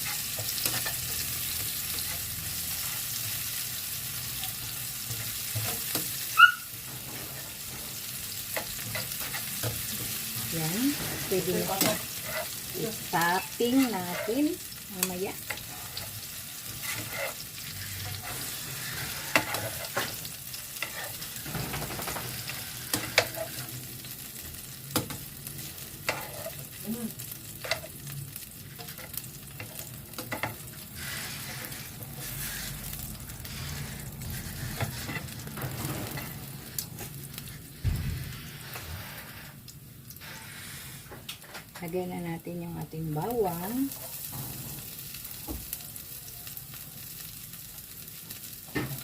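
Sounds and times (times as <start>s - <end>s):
food sizzling in oil: 0.0s - 49.0s
utensil scraping pan: 5.0s - 23.7s, 26.0s - 26.7s, 28.8s - 37.1s.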